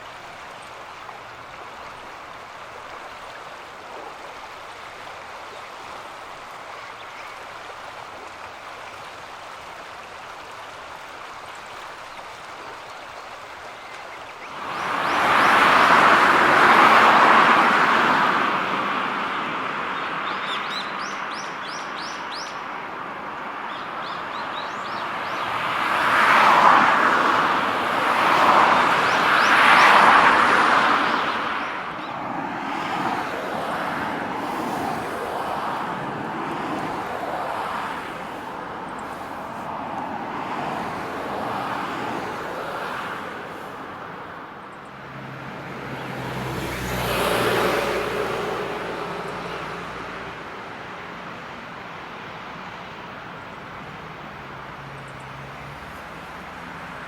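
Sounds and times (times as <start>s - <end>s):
road traffic passing: 9.6s - 57.0s.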